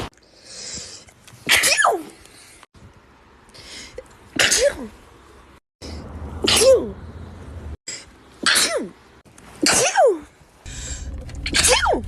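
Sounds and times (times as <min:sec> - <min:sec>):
person sneezing: 0:01.5 - 0:02.2, 0:04.4 - 0:04.9, 0:06.4 - 0:06.9, 0:08.4 - 0:09.0, 0:09.6 - 0:10.3.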